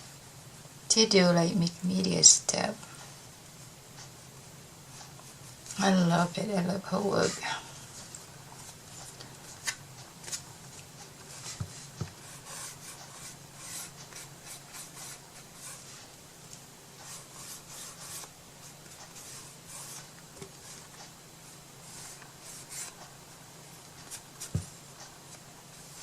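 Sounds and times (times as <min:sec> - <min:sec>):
faint steady hum: 0:00.0 - 0:26.0
rubbing and scraping strokes: 0:11.3 - 0:16.2, 0:17.0 - 0:21.1, 0:21.8 - 0:23.1.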